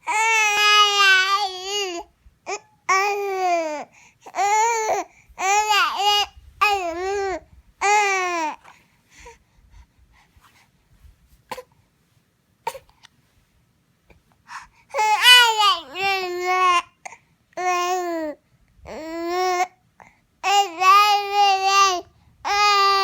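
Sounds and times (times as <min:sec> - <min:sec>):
baby babbling crossly: 0:00.0 - 0:08.8, 0:14.5 - 0:19.8, 0:20.4 - 0:23.0
baby hiccups: 0:12.6 - 0:13.0.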